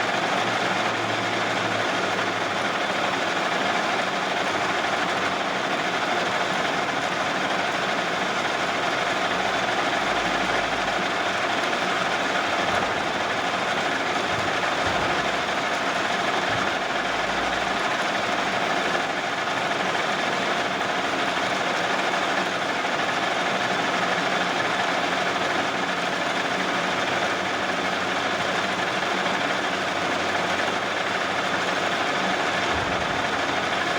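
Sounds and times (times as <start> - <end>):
metal lathe running: 0.0 - 33.9.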